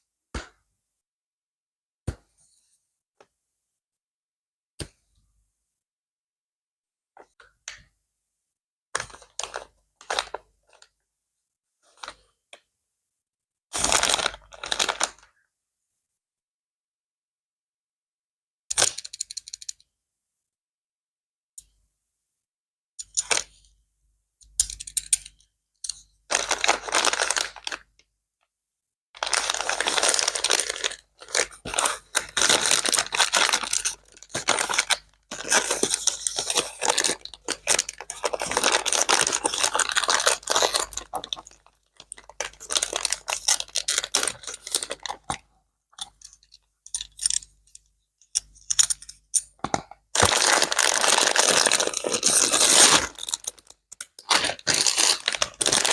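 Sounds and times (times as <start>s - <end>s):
packaging crinkling and tearing: 13.8s - 15.2s, 26.3s - 27.8s, 29.2s - 45.4s, 50.2s - 55.9s.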